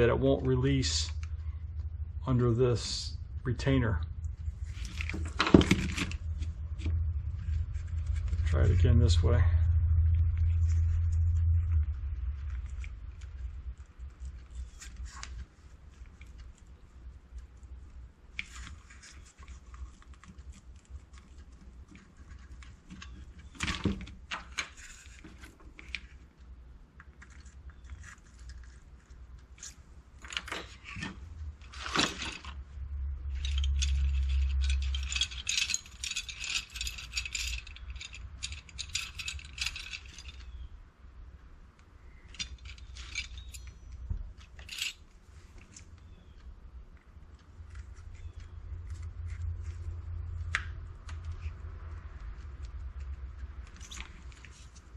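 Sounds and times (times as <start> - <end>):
scraping and rattling: 0.0 - 16.7, 27.2 - 40.7, 42.1 - 46.4.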